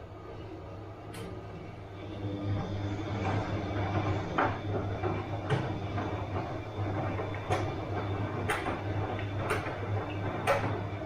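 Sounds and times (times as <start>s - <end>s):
washing machine motor hum: 0.0s - 11.0s
washing machine drum knocking: 3.2s - 11.0s.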